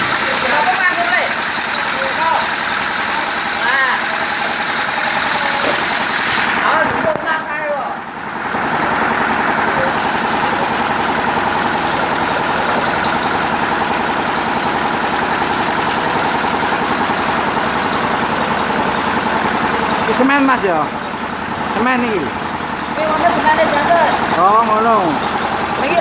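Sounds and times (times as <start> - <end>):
paving block machine vibrating: 0.0 - 7.4.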